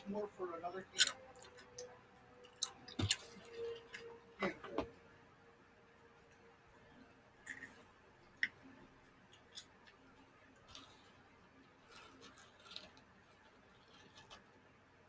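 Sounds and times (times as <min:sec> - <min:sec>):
clicks and crackles of eating: 0:00.9 - 0:04.1, 0:07.3 - 0:14.7.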